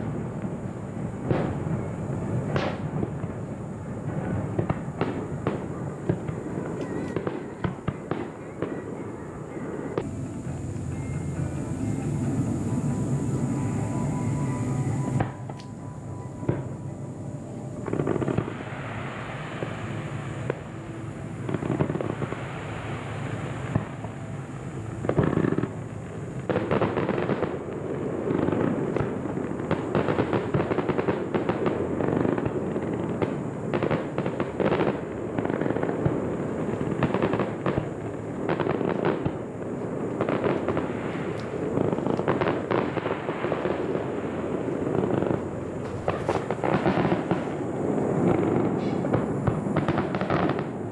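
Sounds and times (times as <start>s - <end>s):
fireworks crackling: 0.0s - 50.9s
firework shell bursts: 40.1s - 50.9s.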